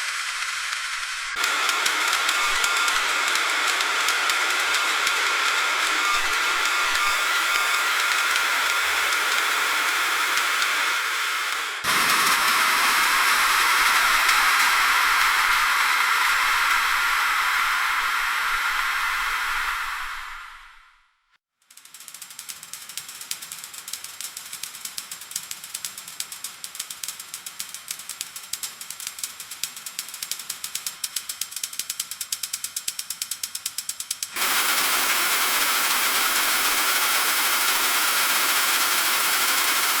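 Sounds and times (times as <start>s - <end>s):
heavy sleet hiss: 0.0s - 20.8s, 34.4s - 40.0s
freezing rain on metal roof: 34.4s - 40.0s.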